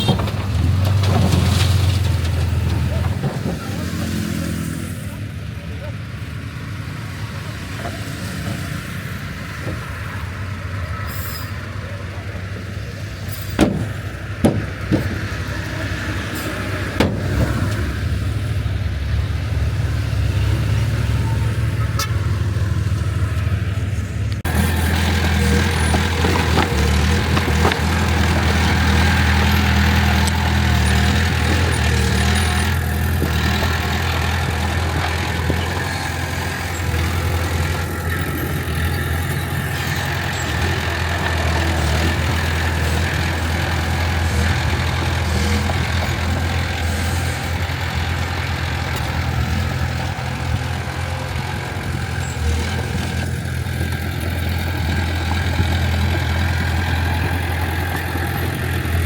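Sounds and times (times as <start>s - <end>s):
heavy diesel machinery running: 0.0s - 59.0s
sharp metallic clanks: 13.3s - 15.4s.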